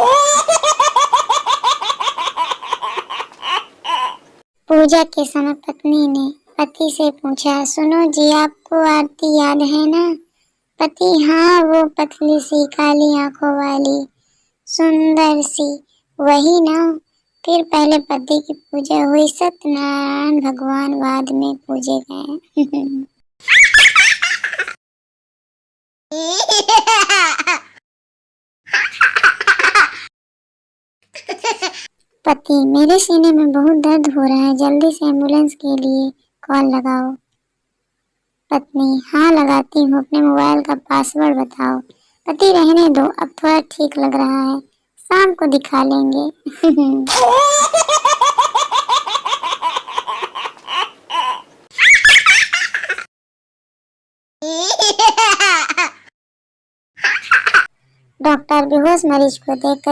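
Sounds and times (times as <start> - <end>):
high-pitched laughter: 0.0 - 4.2, 22.6 - 24.8, 47.1 - 53.1, 57.0 - 57.7
laughter sound effect: 23.5 - 24.8, 46.6 - 47.8.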